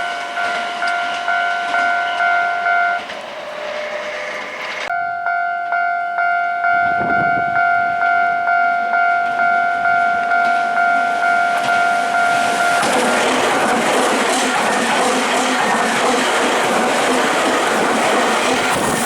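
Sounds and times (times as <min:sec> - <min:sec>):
level crossing alarm bell: 0:00.0 - 0:14.4
approaching train: 0:00.0 - 0:19.0.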